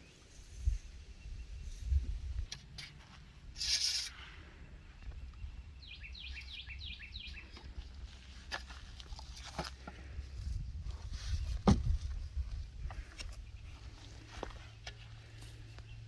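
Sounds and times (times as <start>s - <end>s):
songbird singing downward notes: 5.2s - 7.5s.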